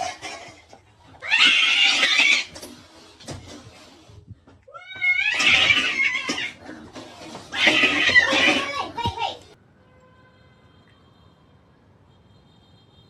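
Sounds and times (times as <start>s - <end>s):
cat crying loudly: 1.2s - 2.5s, 4.7s - 6.6s, 7.5s - 8.7s.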